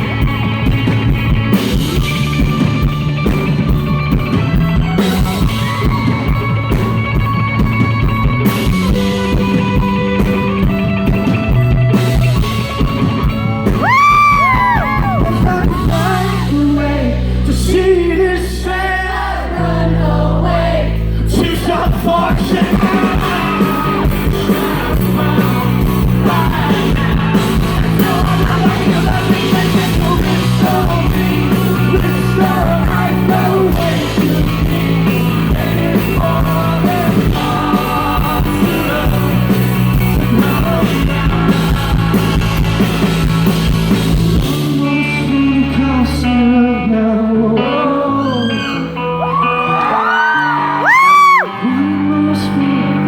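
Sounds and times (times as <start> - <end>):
live rock band playing: 0.0 - 53.0
lead singer singing: 13.4 - 53.0.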